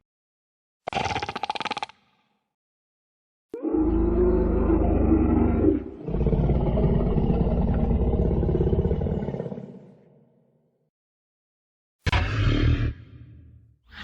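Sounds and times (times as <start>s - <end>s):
deep dinosaur roars: 3.6s - 10.2s, 12.1s - 13.4s.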